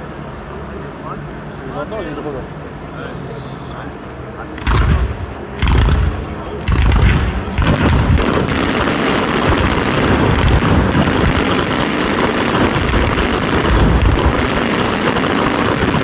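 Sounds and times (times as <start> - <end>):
deep firework booms: 4.6 - 16.0
fireworks bangs and crackles: 4.6 - 16.0.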